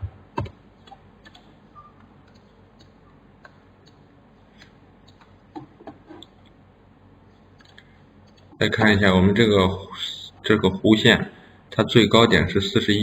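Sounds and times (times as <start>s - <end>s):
mouse and keyboard clicking: 0.4s - 1.5s.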